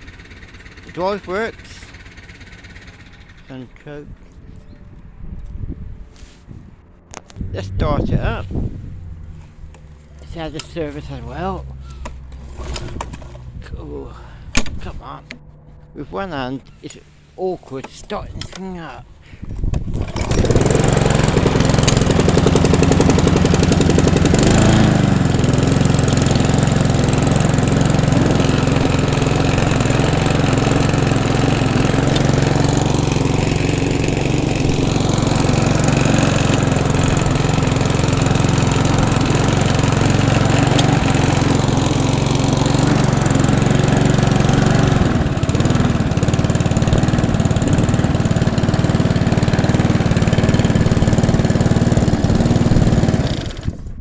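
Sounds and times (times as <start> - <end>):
lawnmower engine running: 0.0 - 54.0.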